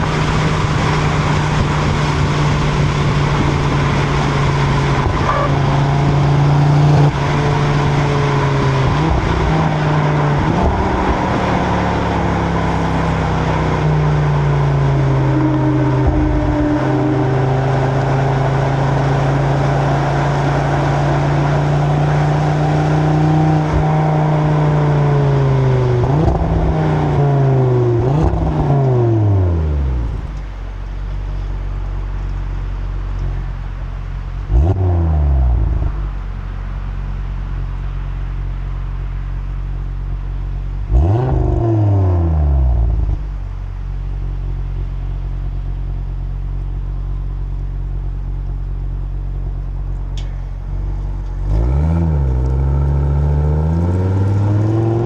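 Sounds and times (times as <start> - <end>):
wind noise: 0.0 - 11.9
car engine cruising: 0.0 - 55.0.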